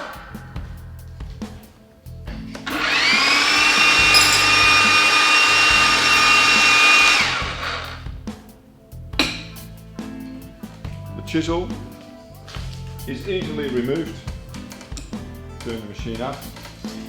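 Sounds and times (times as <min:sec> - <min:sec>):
jackhammer motor whining: 0:02.6 - 0:08.0.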